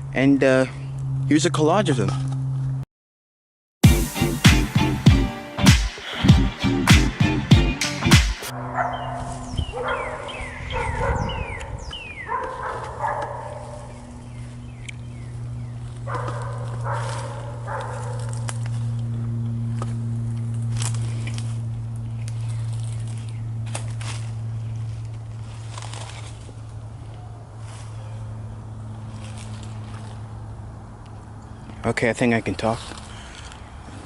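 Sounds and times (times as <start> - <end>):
dogs barking: 8.5 - 14.1, 16.0 - 18.5
steady low hum: 11.6 - 31.8.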